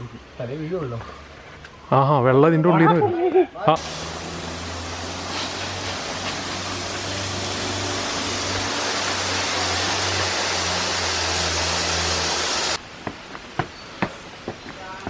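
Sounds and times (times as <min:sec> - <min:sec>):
water running hard from fixture: 0:03.8 - 0:12.8.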